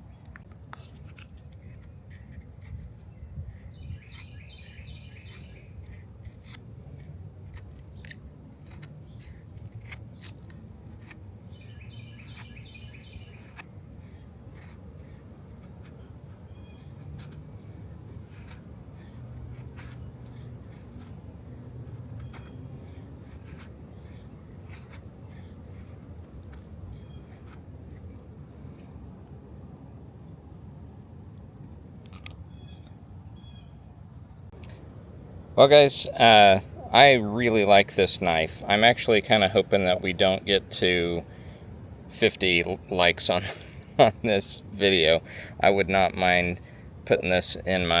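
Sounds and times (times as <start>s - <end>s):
knife whittling wood: 0.8s - 28.1s
birds chirping: 1.8s - 6.5s, 7.4s - 15.2s, 16.5s - 17.0s, 21.4s - 25.9s, 26.9s - 28.0s, 32.4s - 33.9s, 35.6s - 48.0s.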